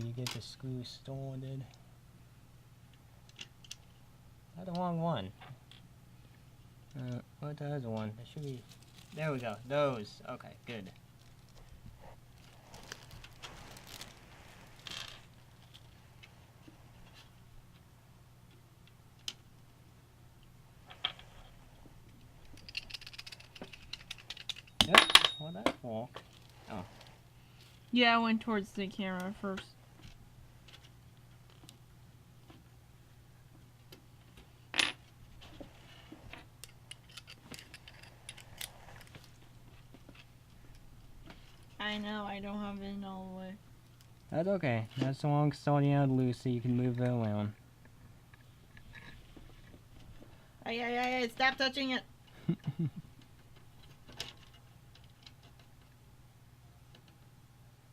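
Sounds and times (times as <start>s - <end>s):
steady low hum: 0.0s - 57.9s
screws clinking on metal: 22.6s - 25.6s
ringing metal clink: 24.8s - 25.7s.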